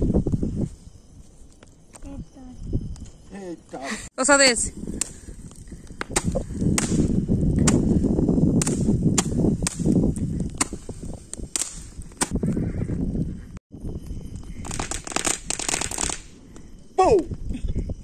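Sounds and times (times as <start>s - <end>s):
bonfire crackling: 0.0s - 18.0s
sharp pops: 4.9s - 12.6s, 14.6s - 16.4s.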